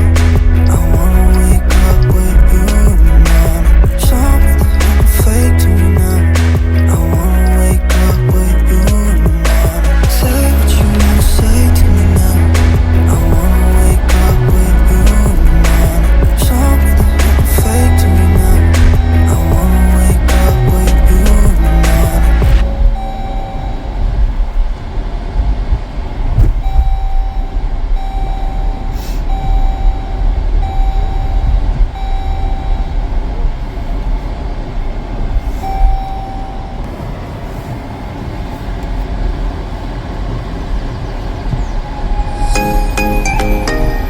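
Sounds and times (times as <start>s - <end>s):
low rumble: 0.0s - 44.0s
electronic beep: 10.2s - 24.0s, 26.6s - 33.0s, 35.6s - 36.8s, 41.9s - 44.0s.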